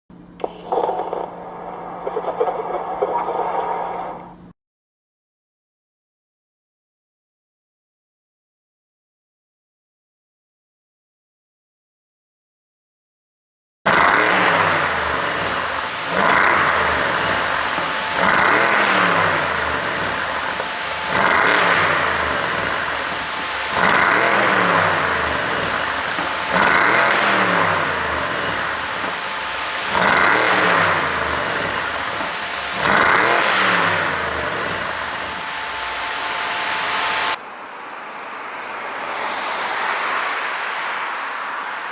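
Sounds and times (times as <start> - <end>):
car engine revving: 13.9 - 41.9.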